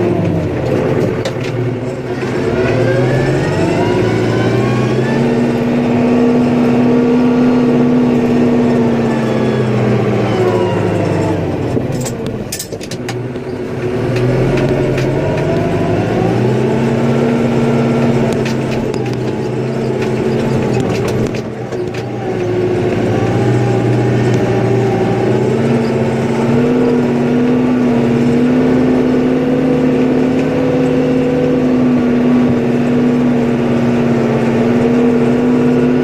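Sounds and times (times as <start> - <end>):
snowplow engine revving: 0.0 - 36.0.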